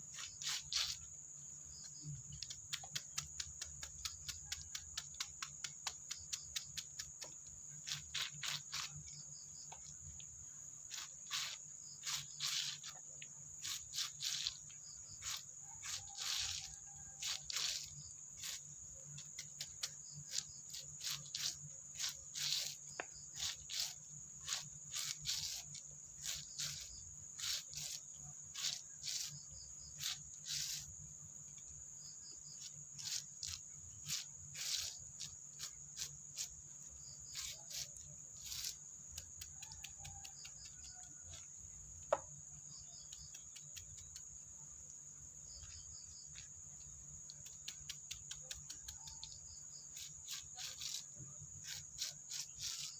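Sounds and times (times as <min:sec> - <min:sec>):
insects chirring: 0:00.0 - 0:52.9
scratchy strokes: 0:00.1 - 0:01.1, 0:02.8 - 0:09.9, 0:10.9 - 0:13.0, 0:13.6 - 0:30.9, 0:32.6 - 0:41.5, 0:47.5 - 0:52.9.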